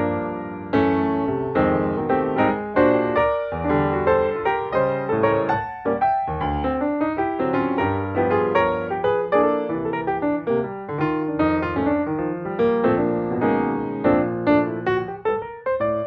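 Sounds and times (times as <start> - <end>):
piano music: 0.0 - 16.0.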